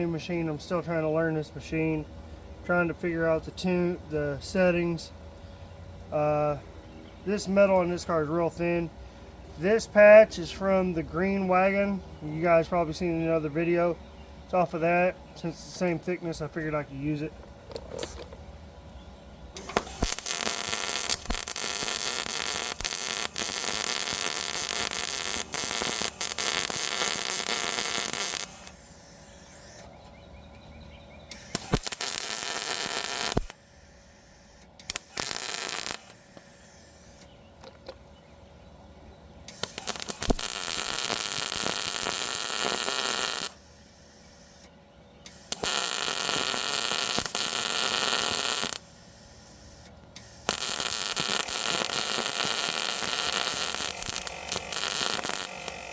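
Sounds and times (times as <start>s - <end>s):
welder arc crackling: 19.5s - 30.0s, 31.3s - 38.0s, 39.4s - 55.9s.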